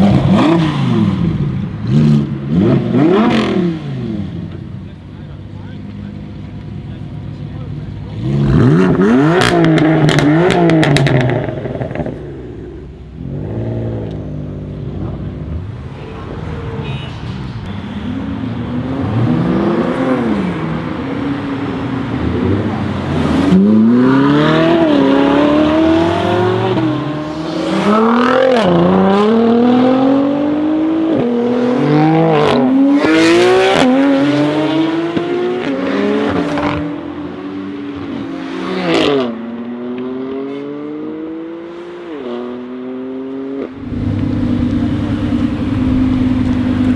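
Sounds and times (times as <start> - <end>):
car engine accelerating hard: 18.4 - 37.1, 42.4 - 46.9
exhaust cracks: 43.8 - 46.9.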